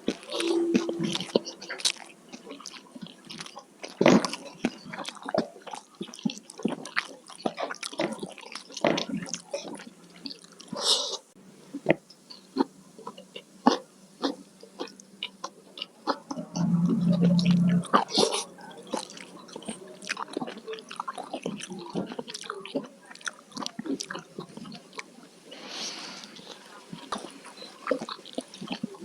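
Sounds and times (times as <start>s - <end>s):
wet chewing: 2.5s - 10.8s, 18.9s - 25.1s, 26.3s - 29.0s.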